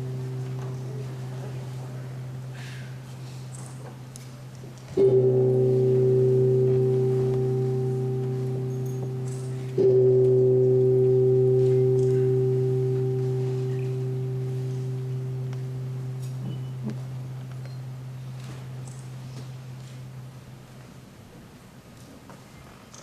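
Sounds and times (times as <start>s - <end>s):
steady low hum: 0.0s - 21.8s
metal bell ringing: 5.0s - 20.3s.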